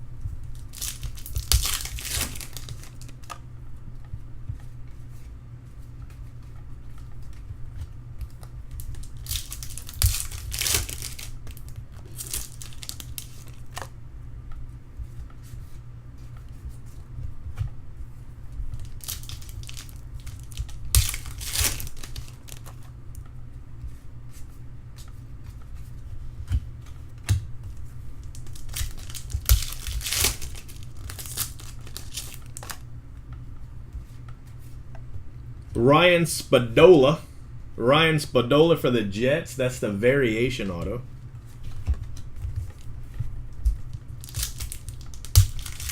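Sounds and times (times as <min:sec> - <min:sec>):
steady low hum: 0:00.0 - 0:45.9
card pack wrappers crinkling: 0:00.5 - 0:03.4, 0:08.8 - 0:13.9, 0:18.8 - 0:22.8, 0:28.2 - 0:32.8, 0:43.7 - 0:45.9.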